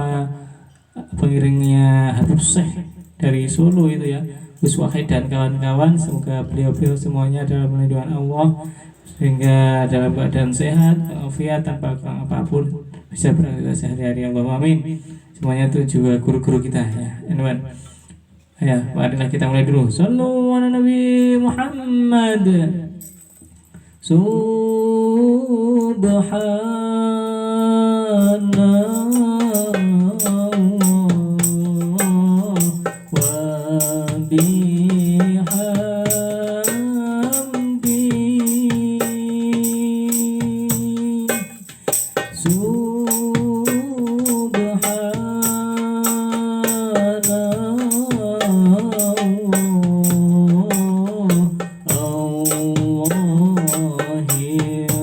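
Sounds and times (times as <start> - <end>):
person singing devotional song: 24.0 - 55.0
hand percussion beat: 28.2 - 55.0.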